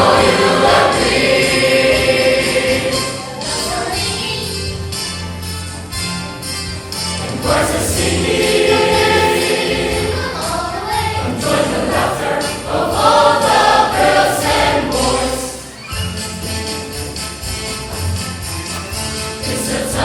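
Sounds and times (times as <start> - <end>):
choir singing: 0.0 - 4.6, 7.2 - 17.1, 19.4 - 20.0
instrumental accompaniment: 0.0 - 20.0.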